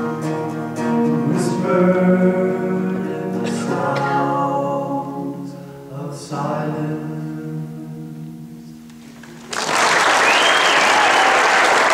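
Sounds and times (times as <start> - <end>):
two men singing: 1.0 - 8.4
audience applause: 9.2 - 11.9.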